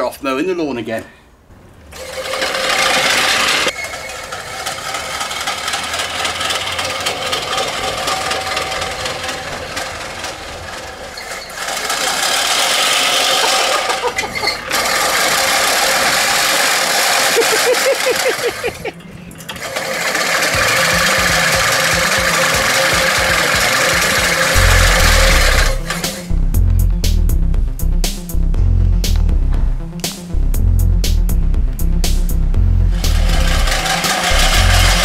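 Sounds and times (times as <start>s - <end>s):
reel mower blades whirring: 1.9s - 26.4s, 32.8s - 35.0s
mobility scooter drive: 1.9s - 26.7s, 32.8s - 35.0s.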